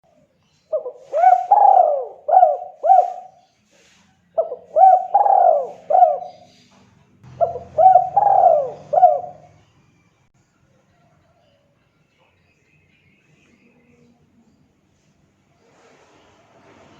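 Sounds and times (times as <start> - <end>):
dove cooing: 0.7 - 6.6, 7.3 - 9.6.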